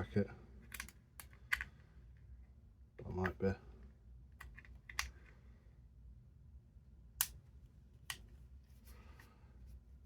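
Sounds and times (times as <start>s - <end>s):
pry tool clicking plastic clips: 0.7s - 1.7s.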